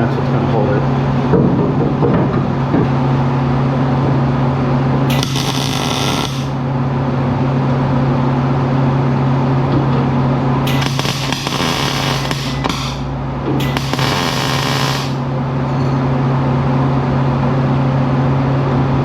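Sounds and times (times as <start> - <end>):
machine humming: 2.5 - 8.0, 10.2 - 17.7
harsh hissing bursts: 5.1 - 6.6, 10.7 - 13.1, 13.7 - 15.3.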